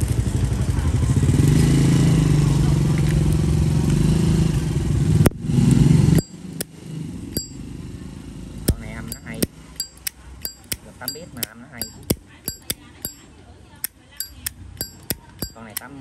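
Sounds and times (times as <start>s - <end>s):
motorcycle engine running: 0.0s - 5.0s
lighter lid metallic clicks: 8.7s - 13.2s, 14.2s - 15.9s.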